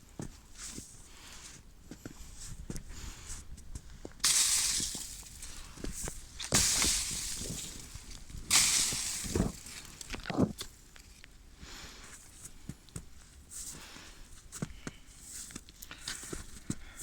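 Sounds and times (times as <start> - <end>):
light clicks and crackles: 15.5 - 16.7.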